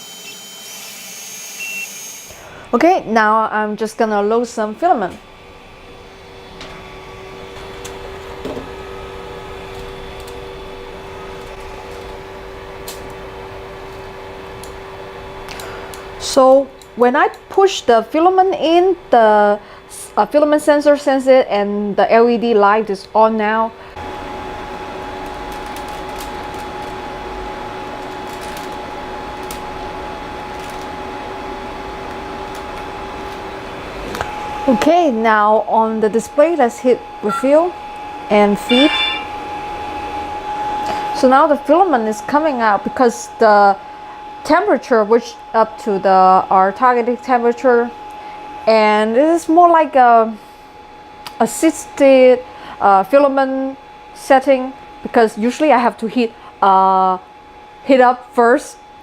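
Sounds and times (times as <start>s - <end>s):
printer cooling fans whirring: 0.0s - 59.0s
two-note hum: 37.1s - 39.8s.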